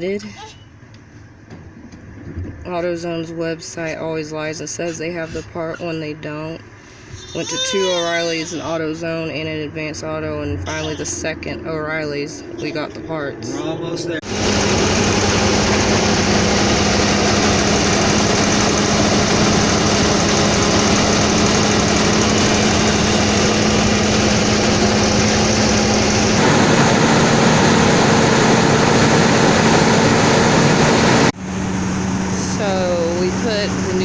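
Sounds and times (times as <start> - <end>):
motorhome engine running: 14.2 - 34.0.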